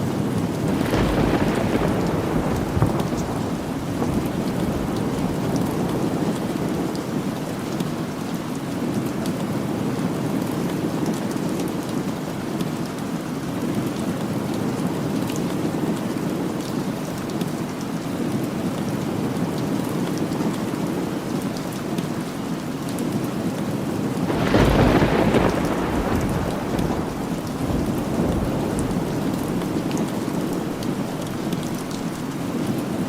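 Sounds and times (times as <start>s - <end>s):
steady rain: 0.0s - 33.0s
thunder clap rumbling: 0.6s - 6.8s, 24.2s - 32.0s.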